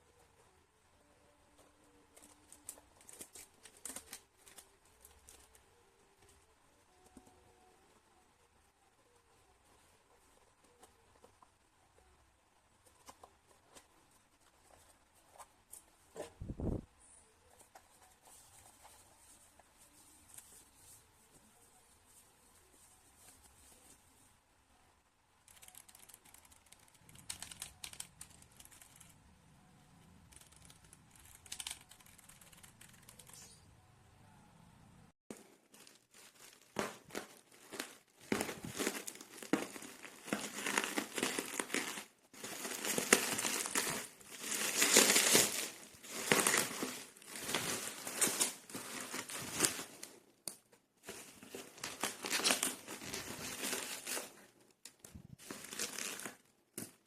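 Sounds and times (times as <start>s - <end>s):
plastic packaging crinkling: 35.3s - 50.2s, 51.0s - 54.5s, 55.3s - 57.0s.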